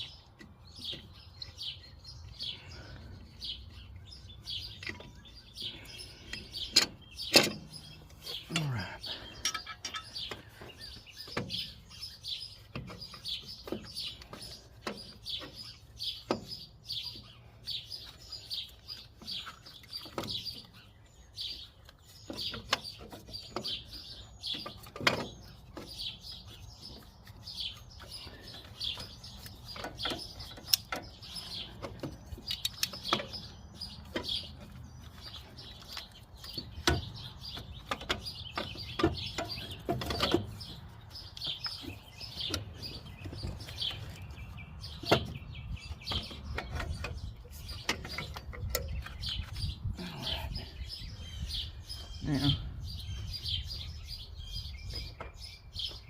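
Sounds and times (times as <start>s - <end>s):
small birds chirping: 0.0s - 56.0s
hand tools clicking and knocking: 6.3s - 11.8s, 26.9s - 44.3s.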